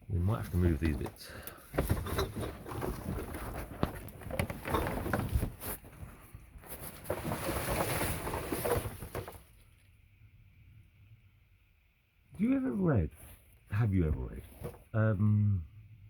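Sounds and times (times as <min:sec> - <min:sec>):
objects being rummaged through: 0:00.4 - 0:09.7.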